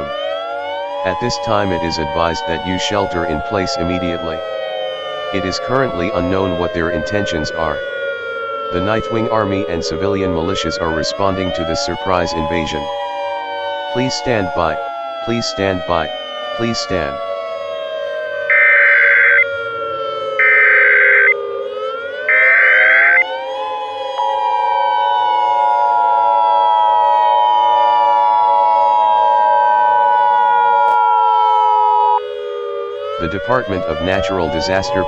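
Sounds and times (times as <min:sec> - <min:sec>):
civil defense siren wailing: 0:00.0 - 0:35.0
steady attention tone: 0:20.4 - 0:21.4.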